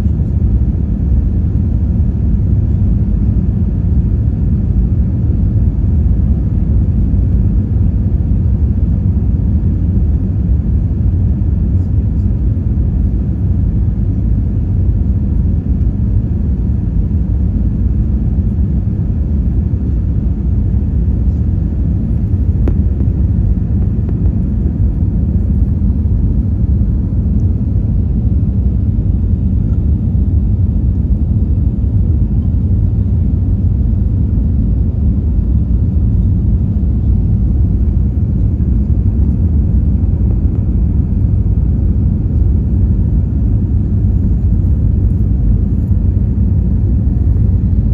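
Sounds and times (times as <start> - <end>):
jet engine rumble in cabin: 0.0 - 47.9.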